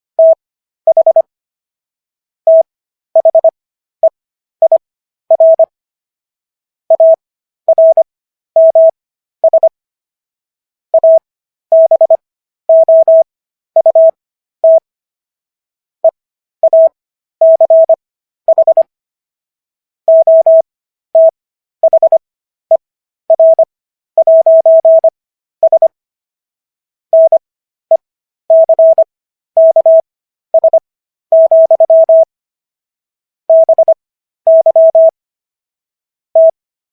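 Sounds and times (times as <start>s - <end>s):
morse code tone beeps: 0.2s - 1.3s, 2.5s - 5.7s, 6.9s - 9.8s, 11.0s - 14.8s, 16.0s - 18.9s, 20.1s - 26.0s, 27.1s - 32.3s, 33.5s - 35.2s, 36.4s - 36.6s.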